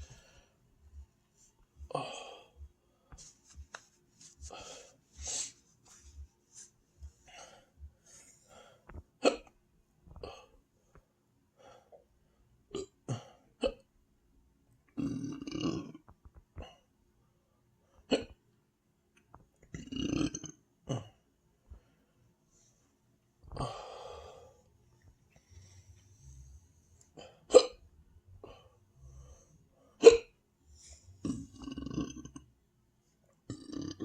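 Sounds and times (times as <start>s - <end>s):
person hiccupping: 12.7s - 13.9s, 18.1s - 18.4s, 19.6s - 21.2s, 27.3s - 27.8s, 30.0s - 30.4s, 31.2s - 32.5s, 33.5s - 34.0s
person belching: 14.9s - 16.0s, 19.7s - 21.2s, 31.2s - 32.5s, 33.5s - 34.0s.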